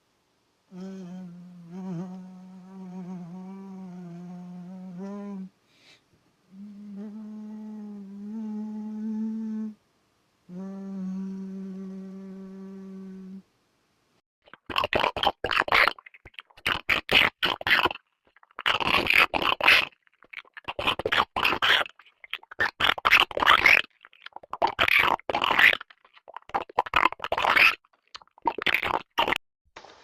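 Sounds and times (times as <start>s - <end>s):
person humming long notes: 0.7s - 5.5s, 6.5s - 9.8s, 10.5s - 13.4s.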